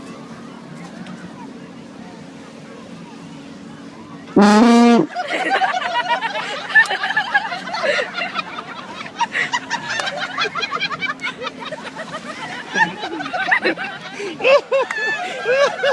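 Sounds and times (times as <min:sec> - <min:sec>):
people snickering and laughing: 0:05.0 - 0:15.9.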